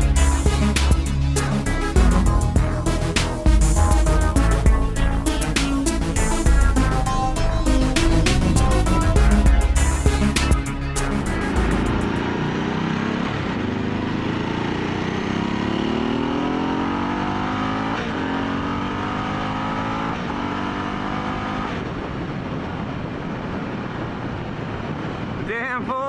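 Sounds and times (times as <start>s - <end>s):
motorcycle accelerating: 0.0s - 23.9s
wind rush: 21.7s - 25.5s.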